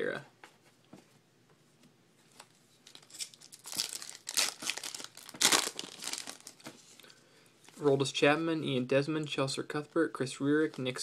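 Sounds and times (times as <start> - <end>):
foil wrapper tearing and crinkling: 2.9 - 6.7.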